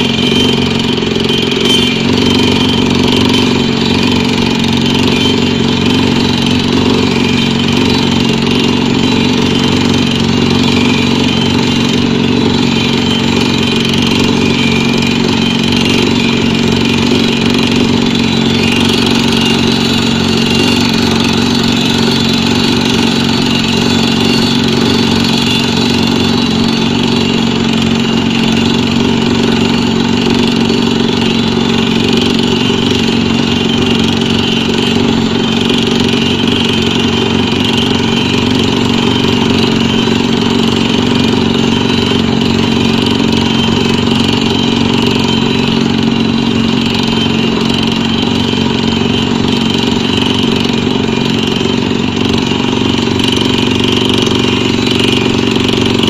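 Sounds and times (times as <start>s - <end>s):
pneumatic drilling rig running: 0.0s - 56.0s.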